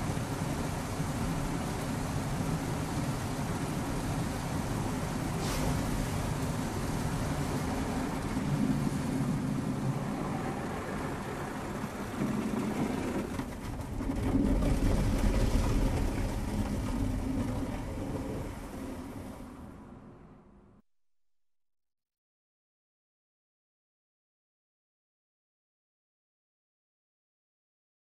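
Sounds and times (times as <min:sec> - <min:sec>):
car wash machinery rumbling: 0:00.0 - 0:20.2
water spraying hiss: 0:03.2 - 0:09.3.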